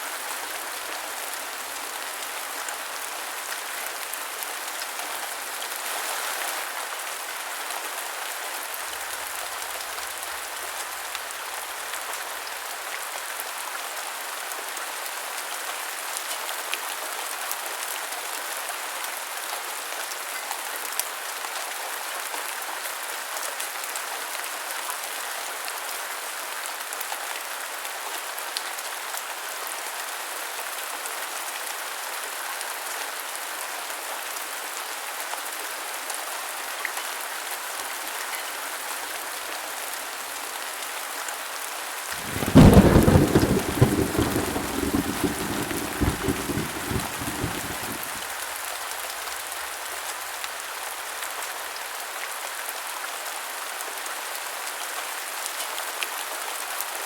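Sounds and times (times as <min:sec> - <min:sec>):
heavy rain hissing: 0:42.1 - 0:49.5
thunderclap rumbling: 0:42.2 - 0:48.2.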